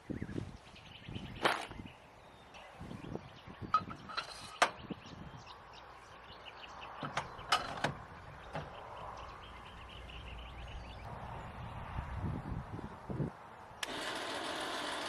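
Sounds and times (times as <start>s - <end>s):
sharp clicks and knocks: 7.0s - 8.8s.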